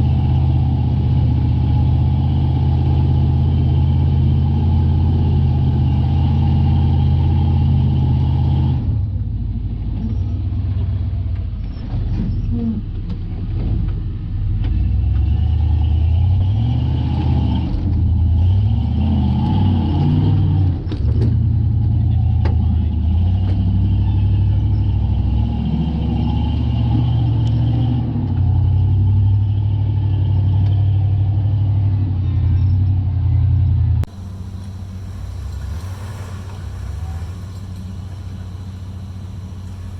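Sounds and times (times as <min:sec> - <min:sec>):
vehicle engine under load: 0:00.0 - 0:39.9.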